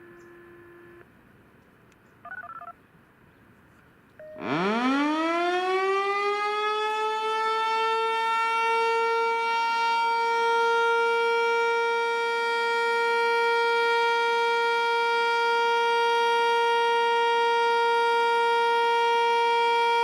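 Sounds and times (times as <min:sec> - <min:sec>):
outdoor warning siren: 0:04.2 - 0:20.0.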